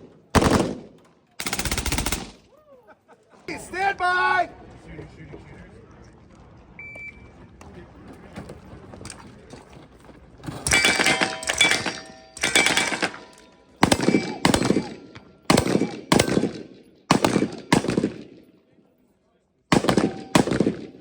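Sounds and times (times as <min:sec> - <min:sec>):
machine gun firing: 0:00.3 - 0:02.4, 0:10.6 - 0:18.5, 0:19.7 - 0:21.0.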